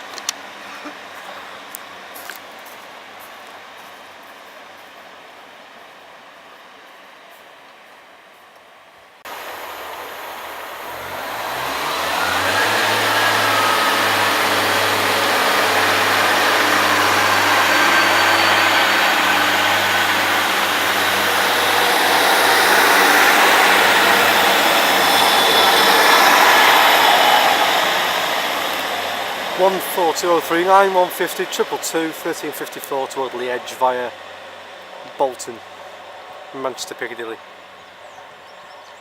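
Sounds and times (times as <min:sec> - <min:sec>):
train diesel engines working hard: 0:09.3 - 0:39.0.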